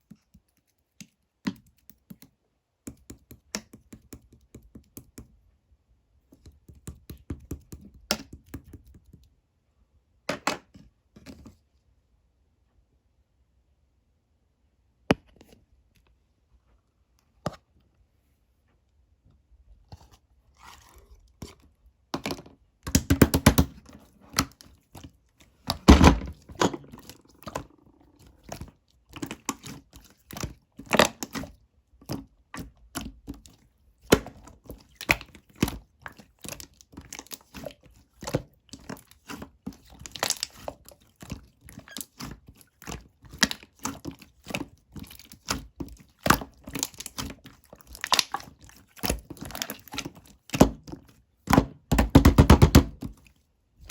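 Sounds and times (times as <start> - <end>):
slime squished by hand: 22.9 - 53.9.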